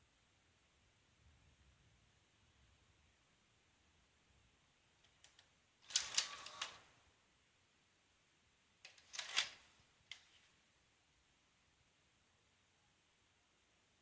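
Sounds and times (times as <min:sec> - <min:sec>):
tape mechanism clicking and whirring: 0:05.2 - 0:06.9, 0:08.9 - 0:10.2.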